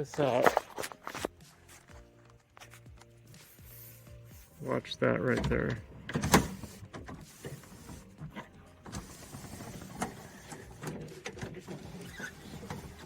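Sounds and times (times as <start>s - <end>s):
glass rubbing in window channel: 6.4s - 13.0s.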